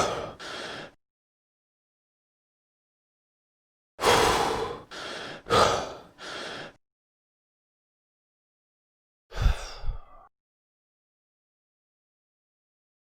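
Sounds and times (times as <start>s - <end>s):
person breathing heavily: 0.0s - 1.0s, 4.0s - 6.8s, 9.3s - 10.3s
sigh-like breath: 0.0s - 1.0s, 4.0s - 6.8s, 9.3s - 10.3s.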